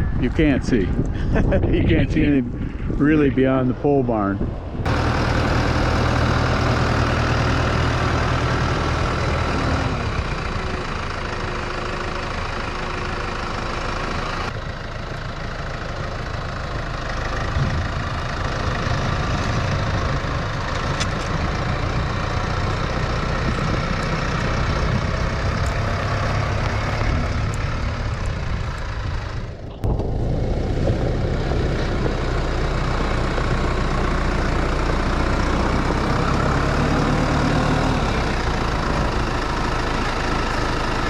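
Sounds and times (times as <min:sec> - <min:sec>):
vehicle engine low hum: 0:00.0 - 0:41.0.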